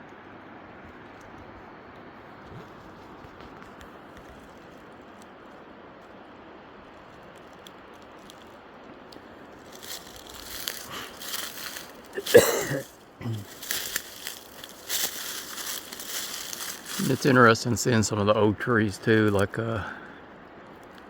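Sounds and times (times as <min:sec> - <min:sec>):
faint steady hiss: 0:00.0 - 0:21.0
footsteps crunching dry leaves: 0:09.5 - 0:18.1
scraping rustle: 0:09.6 - 0:18.0.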